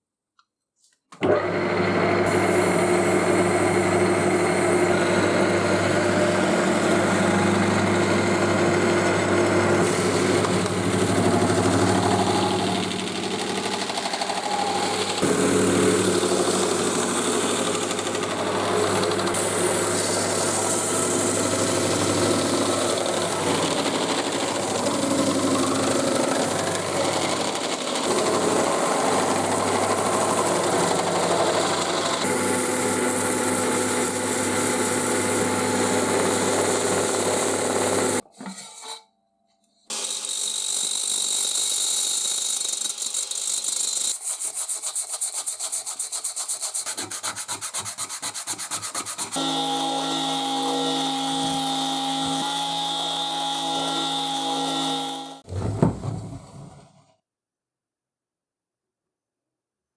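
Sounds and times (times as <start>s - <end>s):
machine tool motor hum: 2.3s - 38.2s.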